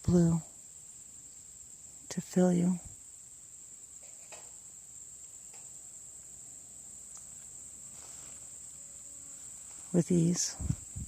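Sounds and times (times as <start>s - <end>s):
insects chirring: 0.0s - 11.0s.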